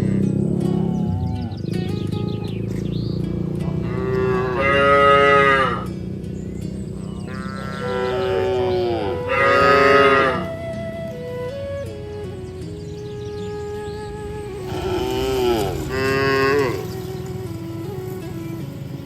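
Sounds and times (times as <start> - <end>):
cattle mooing: 0.0 - 1.5, 2.7 - 5.9, 7.2 - 10.5, 14.6 - 17.1.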